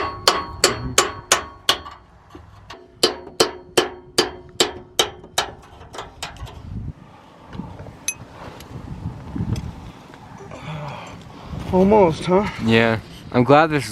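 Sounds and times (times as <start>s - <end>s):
hammer striking chisel on metal: 0.0s - 6.5s.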